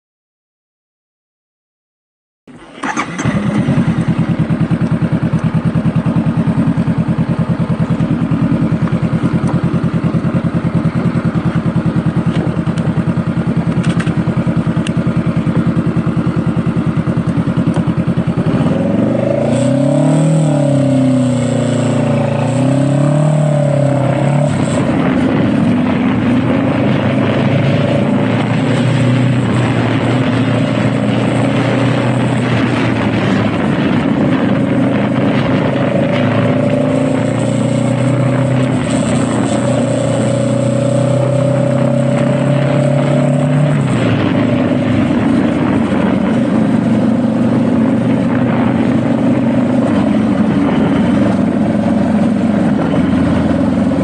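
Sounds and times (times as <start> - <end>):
motorcycle engine idling: 2.5 - 19.3
motorcycle revving and pulling away: 2.5 - 54.0.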